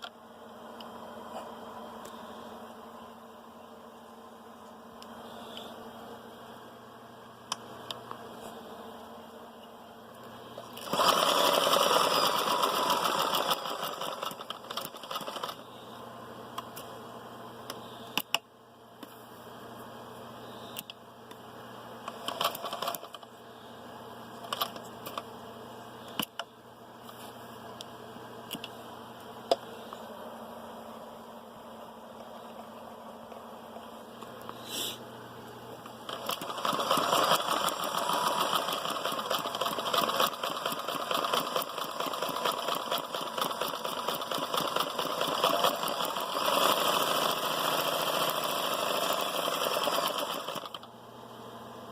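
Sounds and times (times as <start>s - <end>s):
sewing machine running: 10.6s - 15.7s, 22.2s - 23.2s, 36.0s - 50.9s.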